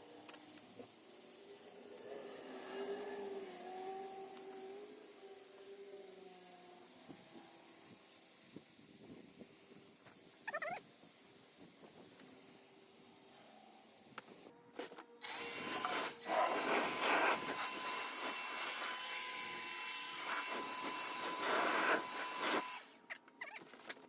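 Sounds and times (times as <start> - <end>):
hose spraying water: 0.0 - 14.5, 15.2 - 23.0
faint steady whistle: 15.7 - 22.9.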